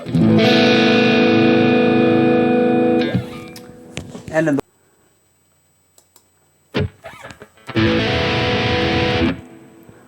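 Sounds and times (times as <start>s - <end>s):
electric guitar chords: 0.0s - 4.2s, 6.7s - 10.0s.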